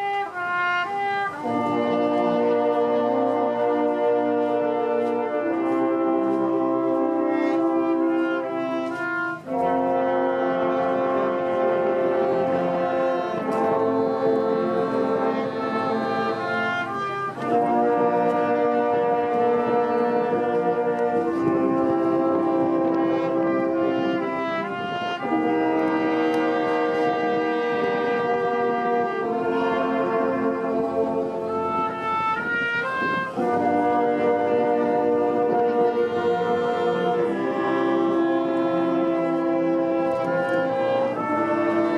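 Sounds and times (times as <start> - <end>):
short run of stepping notes: 0.0 - 41.9
slow held chords music: 9.4 - 32.0.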